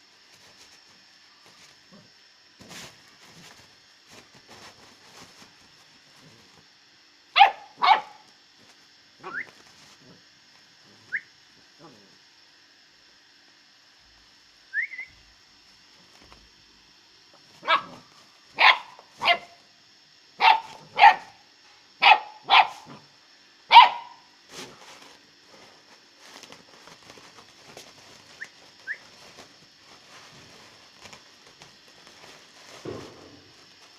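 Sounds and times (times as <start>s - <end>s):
puppy barking: 7.4s - 8.2s, 17.6s - 18.0s, 18.6s - 19.6s, 20.4s - 21.4s, 22.0s - 23.0s, 23.7s - 24.2s.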